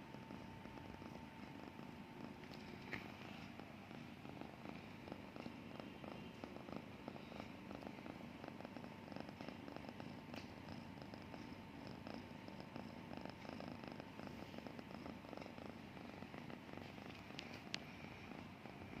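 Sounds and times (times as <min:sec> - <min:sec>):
cat purring: 0:00.0 - 0:19.0.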